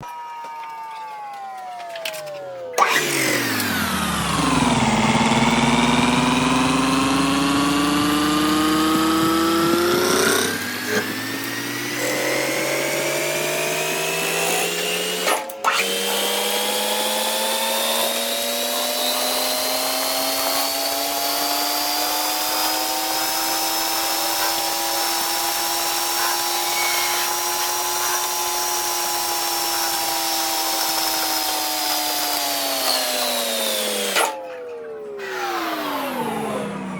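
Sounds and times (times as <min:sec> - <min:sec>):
lathe spindle whining: 0:00.0 - 0:34.5
hiss of metal cutting: 0:20.5 - 0:32.2.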